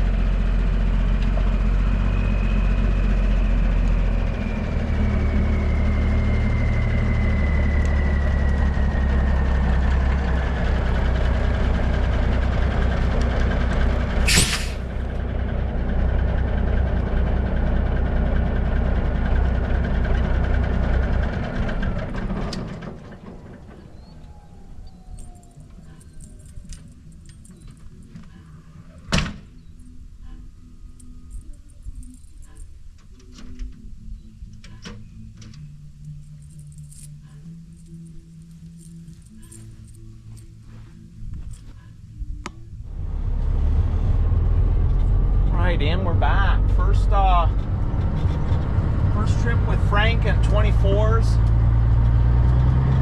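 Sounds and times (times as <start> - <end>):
diesel truck engine running: 0.0 - 25.2, 42.8 - 53.0
air brake hiss: 14.3 - 14.9.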